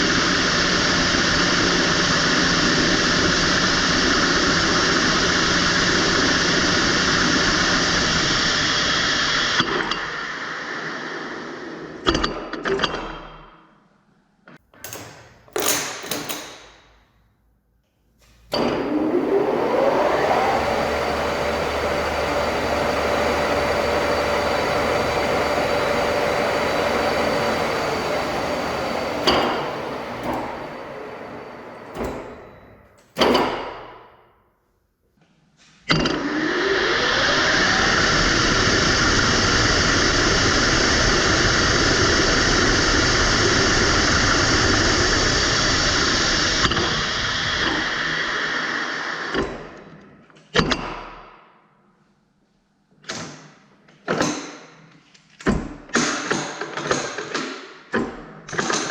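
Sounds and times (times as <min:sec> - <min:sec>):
lathe spindle whine: 0:18.5 - 0:32.9, 0:36.1 - 0:49.3.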